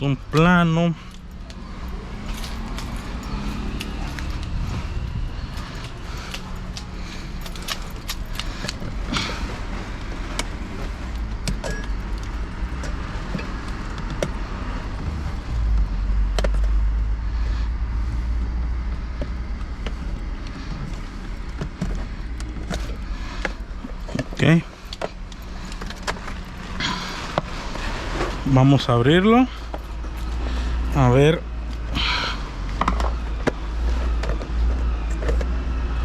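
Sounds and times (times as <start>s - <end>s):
low rumble: 1.0s - 28.6s.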